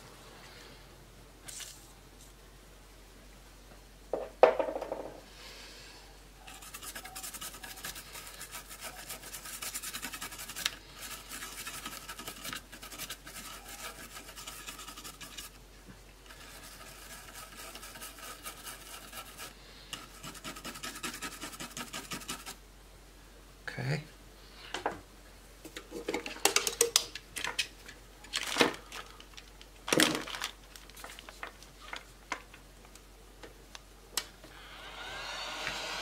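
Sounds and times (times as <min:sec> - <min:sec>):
scrubbing strokes: 0:06.5 - 0:15.6, 0:16.3 - 0:22.6.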